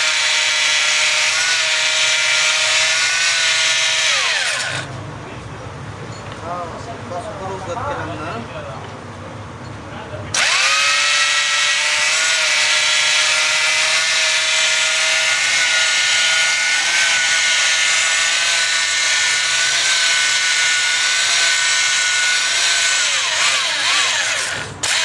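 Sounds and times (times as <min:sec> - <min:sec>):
power tool motor whining: 0:00.0 - 0:04.9, 0:10.3 - 0:25.0.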